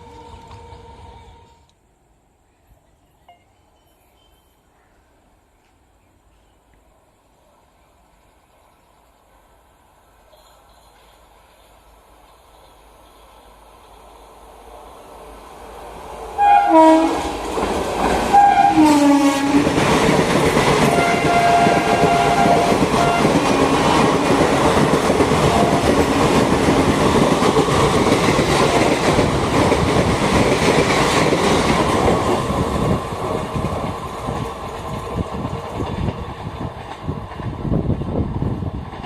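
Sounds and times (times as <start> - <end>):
train wheels clattering past: 15.5 - 39.0
locomotive horn: 16.4 - 17.4, 18.3 - 19.8, 20.8 - 23.5.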